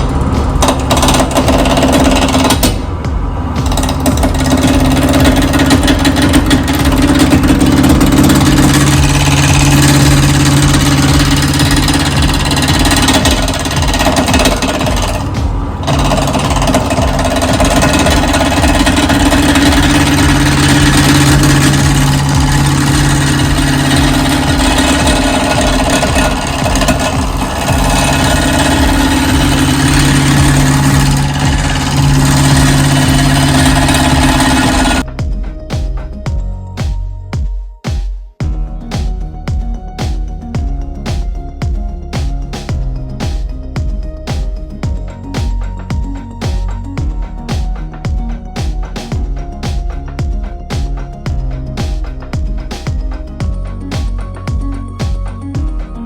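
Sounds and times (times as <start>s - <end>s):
lathe tool chattering on wood: 0.0s - 2.9s, 3.6s - 35.1s
lathe motor hum: 0.0s - 35.1s.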